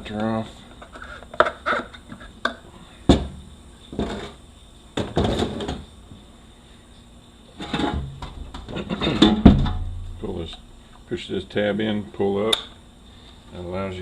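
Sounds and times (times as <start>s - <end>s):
metal parts scraping and rattling: 7.6s - 10.4s
sharp knock: 9.4s - 10.4s.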